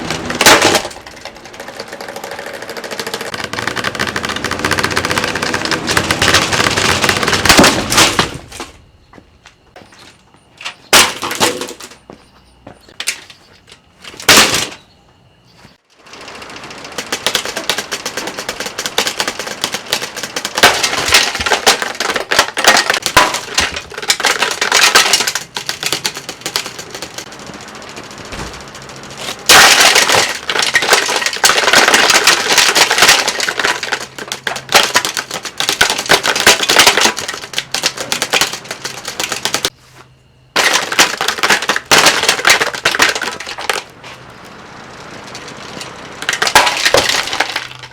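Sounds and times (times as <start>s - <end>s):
plastic cracking and crunching: 0.0s - 8.8s, 16.7s - 39.7s, 40.6s - 44.0s, 45.2s - 47.9s.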